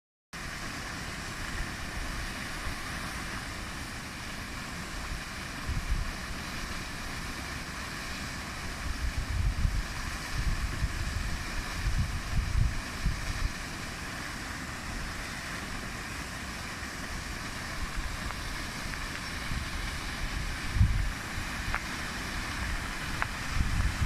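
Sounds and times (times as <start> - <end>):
waterfall rushing: 0.4 - 24.0
wind buffeting microphone: 8.7 - 13.7, 17.0 - 24.0.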